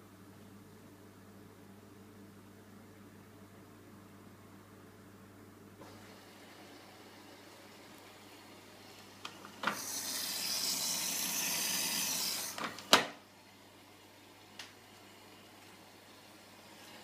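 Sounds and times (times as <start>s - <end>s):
water rushing into washing machine: 9.7s - 12.7s.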